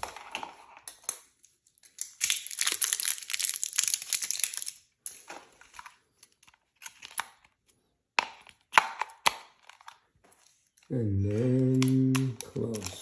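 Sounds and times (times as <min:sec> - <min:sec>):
small plastic parts clicking: 0:11.7 - 0:13.0.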